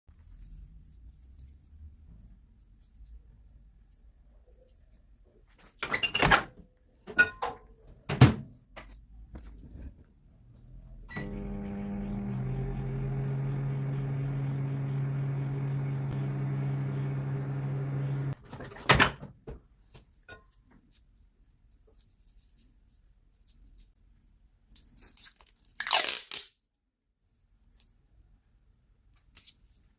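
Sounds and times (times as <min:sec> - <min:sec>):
electric appliance humming: 0:11.1 - 0:18.4.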